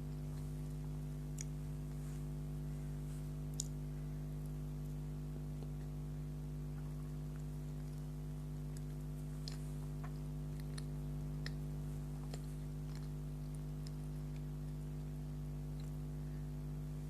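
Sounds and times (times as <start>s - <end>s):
low electrical hum: 0.0s - 17.0s
mouth clicks and smacks eating: 0.1s - 2.1s, 3.4s - 3.8s, 6.6s - 16.1s.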